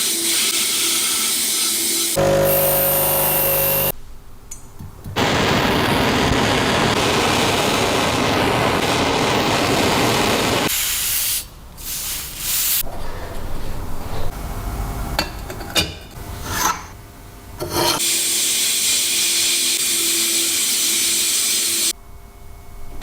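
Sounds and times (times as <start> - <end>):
spray paint hissing: 10.6 - 12.8.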